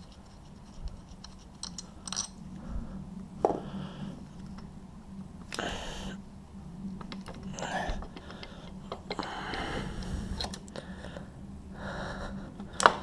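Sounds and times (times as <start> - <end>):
rubbing and scraping of parts: 0.0 - 2.4, 7.0 - 9.7.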